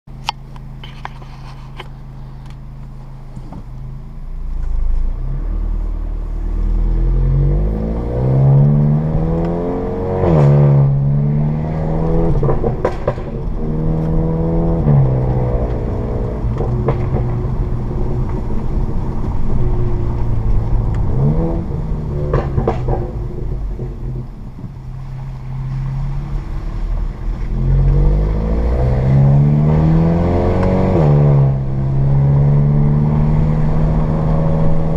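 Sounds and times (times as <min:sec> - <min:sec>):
car engine accelerating: 0:00.1 - 0:34.9
exhaust pops and crackles: 0:12.0 - 0:28.1.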